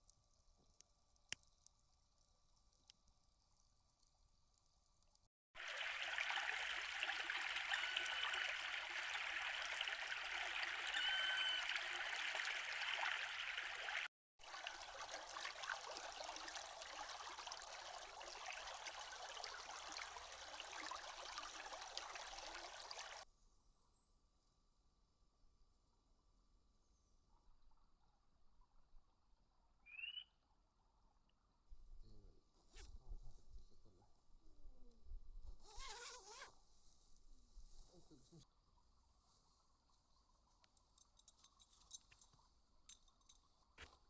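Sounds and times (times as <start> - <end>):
creek trickling over stones: 0.0 - 23.3.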